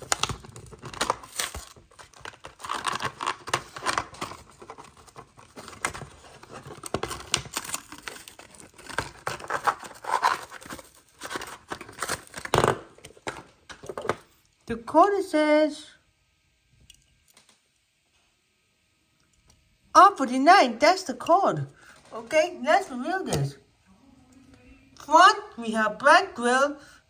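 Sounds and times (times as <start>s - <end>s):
cardboard ripping: 0.0s - 12.8s
plastic crinkling: 0.0s - 14.2s.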